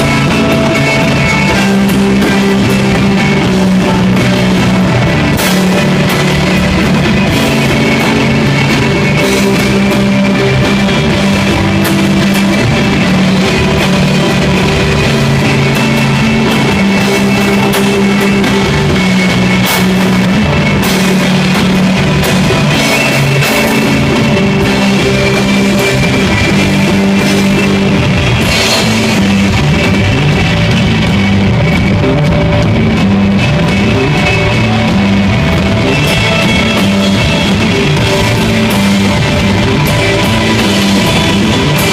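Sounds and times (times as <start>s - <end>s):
live instrumental rock band: 0.0s - 41.9s.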